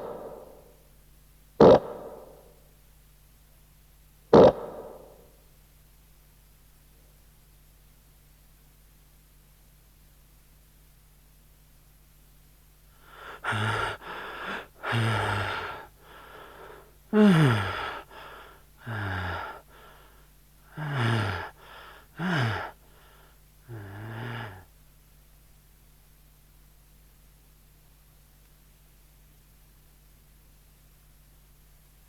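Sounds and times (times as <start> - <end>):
breathing: 12.9 - 24.7
man groaning: 13.4 - 15.9, 17.1 - 18.2, 18.8 - 19.6, 20.8 - 21.6, 22.2 - 22.8, 23.7 - 24.7.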